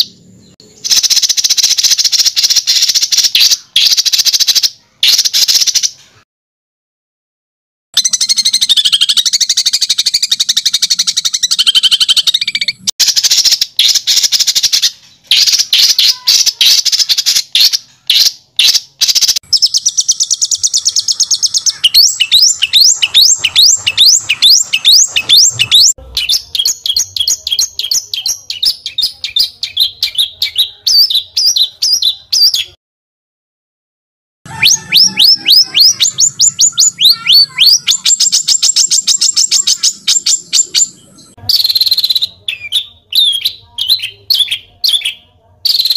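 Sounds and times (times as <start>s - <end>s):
songbird singing trills: 8.0s - 32.8s, 34.5s - 45.9s.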